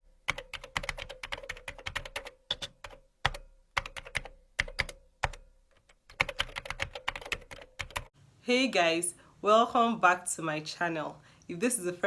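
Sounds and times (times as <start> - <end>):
faint steady hum: 8.2 - 12.0.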